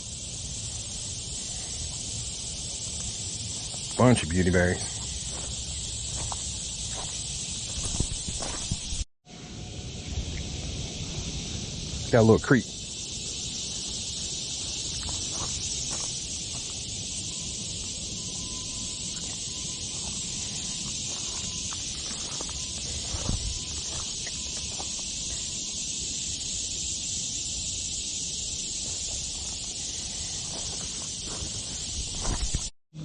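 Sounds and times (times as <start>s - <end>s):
insects chorus: 0.0s - 33.0s
footsteps on a trail: 4.9s - 9.0s, 13.8s - 16.8s, 19.8s - 25.1s, 28.8s - 32.7s.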